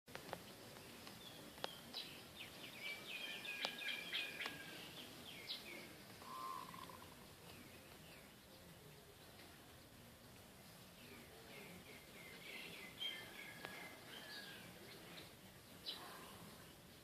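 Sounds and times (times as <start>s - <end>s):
bird chirps and trills: 0.4s - 9.4s.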